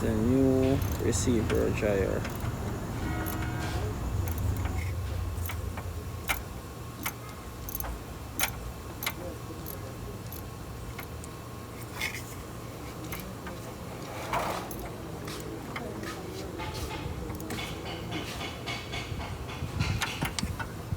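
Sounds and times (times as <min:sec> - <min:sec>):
tools clicking and tapping metal: 0:00.0 - 0:02.6, 0:03.2 - 0:13.7, 0:14.6 - 0:20.8
low hum: 0:00.0 - 0:08.8.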